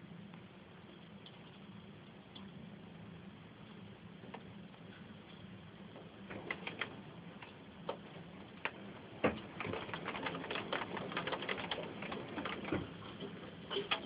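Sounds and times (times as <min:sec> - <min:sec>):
hailstones striking house: 0:06.0 - 0:14.0.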